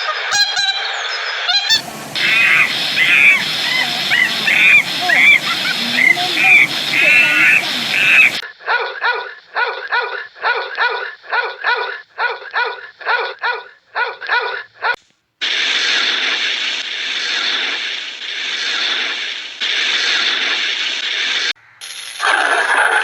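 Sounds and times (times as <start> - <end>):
animal yapping: 1.8 - 8.4
steady hissing noise: 1.8 - 8.4, 15.4 - 22.3.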